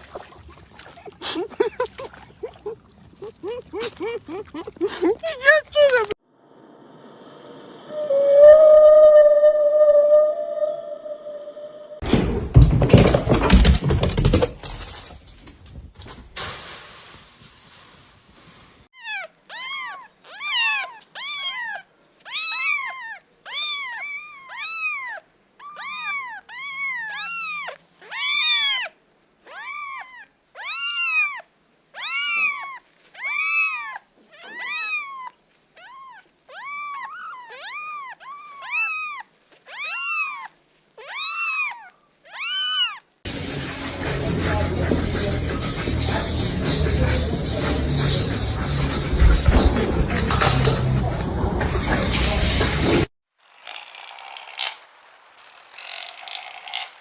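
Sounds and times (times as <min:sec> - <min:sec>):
rustling: 0:12.7 - 0:43.2
cat meowing: 0:19.0 - 0:43.1.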